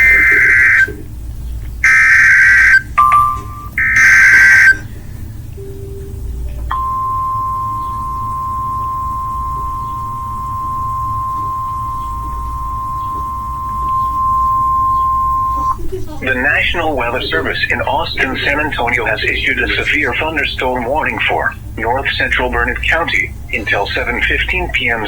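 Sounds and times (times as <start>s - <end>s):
digital data tone bursts: 0.0s - 1.0s, 1.8s - 4.9s, 6.7s - 25.0s
steady alert tone: 1.8s - 4.9s, 6.7s - 25.0s
short beep: 6.7s - 20.2s.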